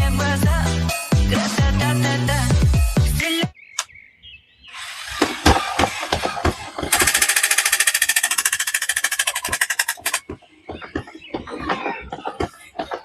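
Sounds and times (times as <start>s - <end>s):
machine-gun fire: 6.9s - 10.2s.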